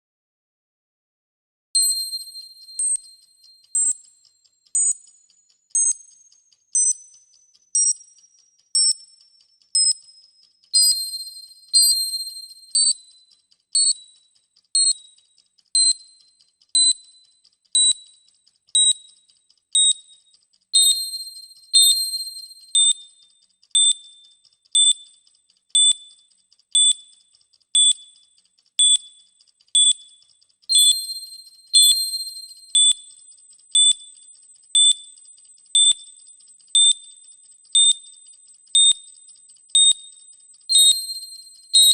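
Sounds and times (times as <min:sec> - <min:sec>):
ringing chime beep: 0:01.8 - 0:04.1, 0:10.8 - 0:13.0, 0:20.8 - 0:23.0, 0:30.7 - 0:33.0, 0:39.8 - 0:41.9
high bell-like countdown beeps: 0:01.8 - 0:15.2, 0:15.8 - 0:18.2, 0:19.8 - 0:23.2, 0:30.7 - 0:33.2, 0:36.8 - 0:37.2, 0:38.8 - 0:39.2, 0:39.8 - 0:41.9
fast light ticking: 0:01.8 - 0:41.9.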